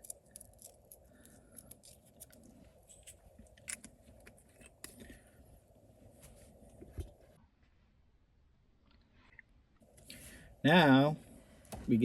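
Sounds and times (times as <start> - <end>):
pepper clicks and scrapes: 0.0 - 5.1
faint steady hum: 0.0 - 12.0.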